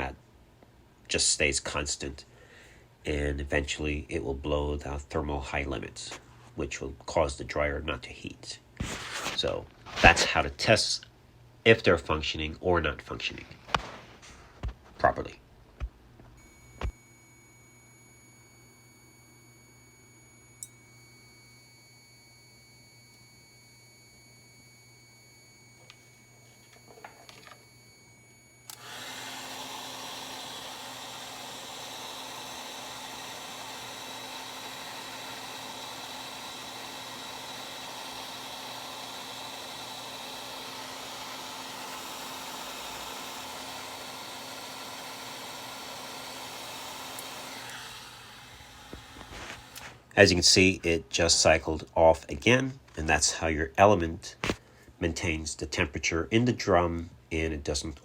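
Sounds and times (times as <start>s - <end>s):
faint hum: 0.0s - 28.9s
electric blower running: 16.4s - 21.2s, 22.7s - 50.0s.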